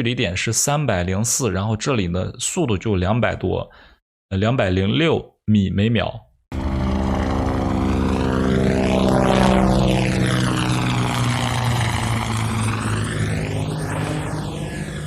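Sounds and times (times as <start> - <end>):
helicopter rotor and engine: 6.5 - 15.0
sweeping whoosh: 6.6 - 15.0.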